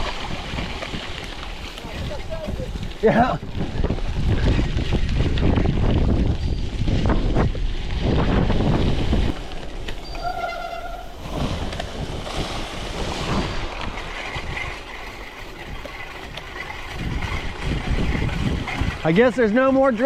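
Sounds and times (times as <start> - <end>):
bike tyres rumbling on gravel: 0.0 - 20.0
wind buffeting microphone: 0.0 - 20.0
high squeal: 10.0 - 11.4.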